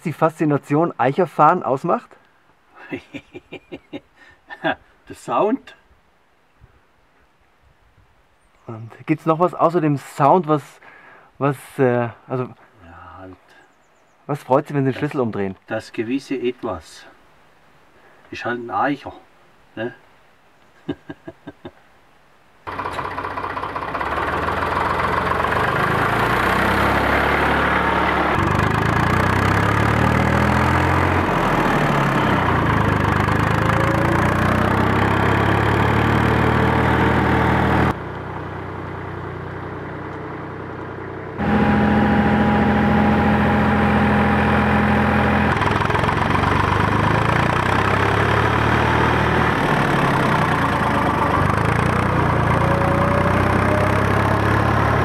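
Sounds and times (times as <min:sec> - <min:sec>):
tractor diesel engines running: 0:22.7 - 0:55.0.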